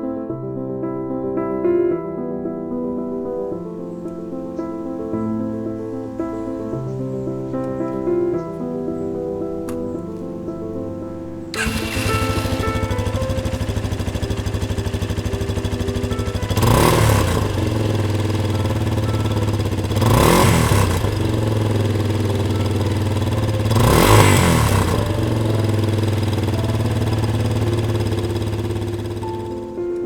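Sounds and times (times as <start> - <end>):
motorcycle engine idling and revving: 11.4 - 30.0.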